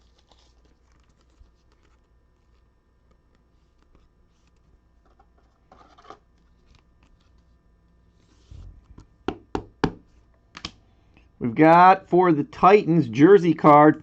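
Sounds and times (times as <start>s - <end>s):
trading cards rustling: 0.0s - 9.2s.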